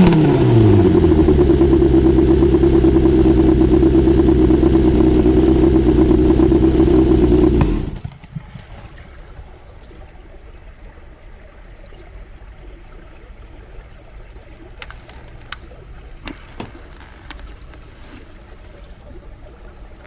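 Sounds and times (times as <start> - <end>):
motorcycle engine idling: 0.4 - 8.0.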